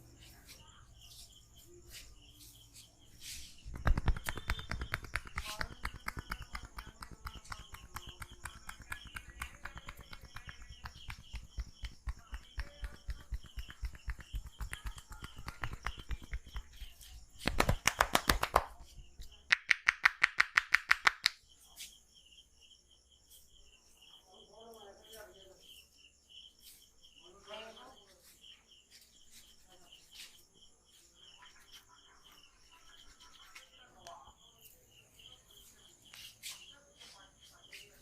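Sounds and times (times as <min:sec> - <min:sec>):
hands slapping head and neck: 0:03.2 - 0:21.9
loud claps: 0:03.7 - 0:16.8, 0:17.4 - 0:18.8, 0:19.5 - 0:21.4.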